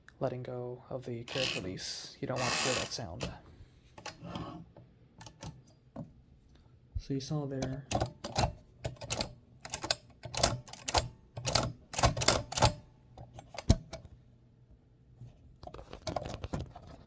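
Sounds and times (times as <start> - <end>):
typewriter mechanism clicking: 4.0 - 4.5, 7.6 - 14.0.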